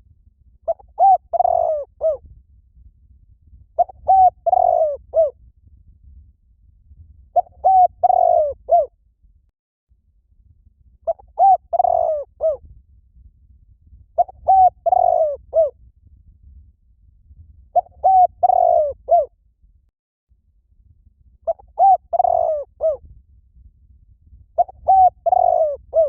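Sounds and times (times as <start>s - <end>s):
dove cooing: 0.7s - 2.2s, 3.8s - 5.3s, 7.4s - 8.9s, 11.1s - 12.6s, 14.2s - 15.7s, 17.8s - 19.3s, 21.5s - 23.0s, 24.6s - 26.0s.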